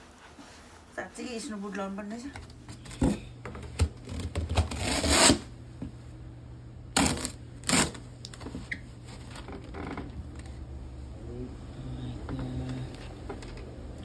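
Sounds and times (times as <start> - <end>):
clothing rustling: 0.0 - 3.0
low steady hum: 0.0 - 14.0.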